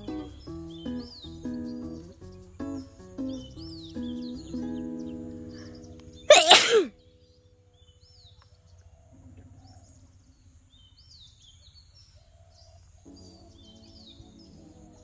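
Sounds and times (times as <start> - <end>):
person sneezing: 6.3 - 6.9.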